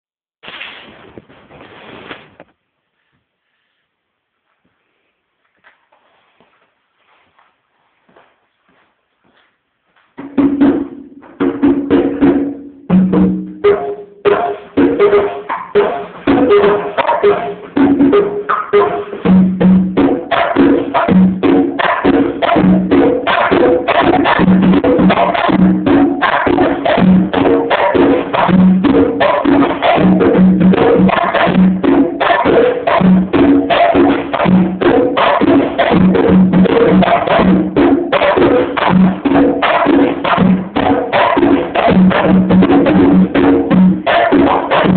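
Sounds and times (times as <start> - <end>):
conga drums played by hand: 10.2 - 44.9.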